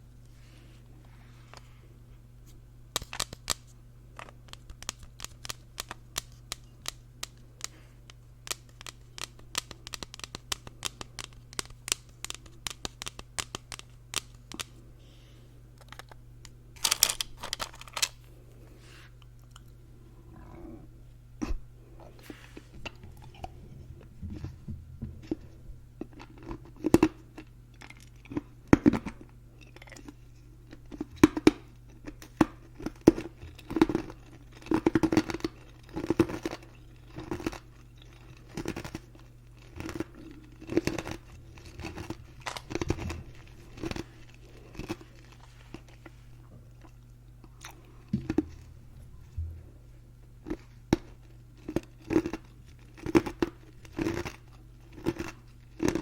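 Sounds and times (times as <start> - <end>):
soft chewing: 17.9 - 56.0.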